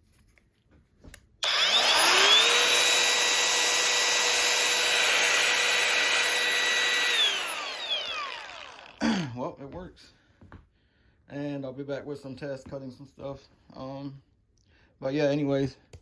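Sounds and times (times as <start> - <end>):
angle grinder whine: 1.4 - 9.0.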